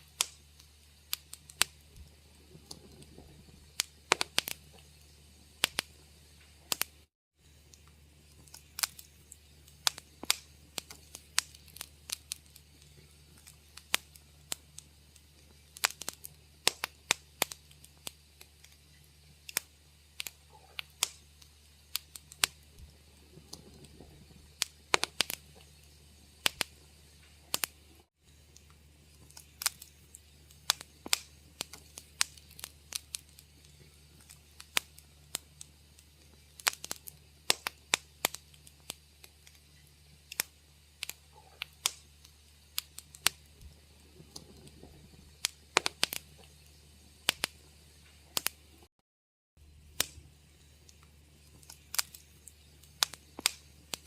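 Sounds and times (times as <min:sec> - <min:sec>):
low hum: 0:00.0 - 0:15.7, 0:18.6 - 0:36.5
wood fire crackling: 0:00.0 - 0:48.9, 0:49.6 - 0:54.0.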